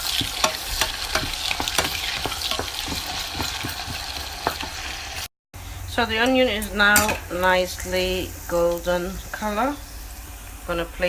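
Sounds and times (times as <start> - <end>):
utensil knocking and scraping pan: 0.0 - 4.9
onions sizzling in hot oil: 0.0 - 5.3, 6.4 - 11.0.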